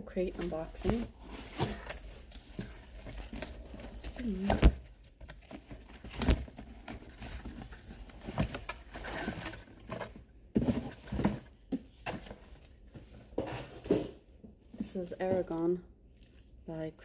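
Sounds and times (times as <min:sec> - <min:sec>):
packaging rustling: 0:00.4 - 0:12.8.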